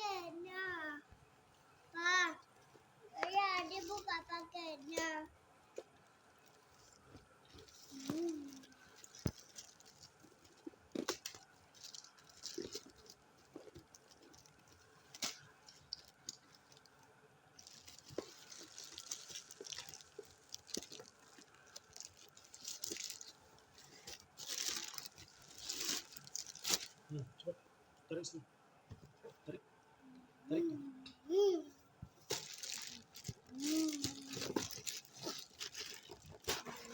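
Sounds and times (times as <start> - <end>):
packaging rustling and crinkling: 5.8 - 27.1, 32.2 - 36.9.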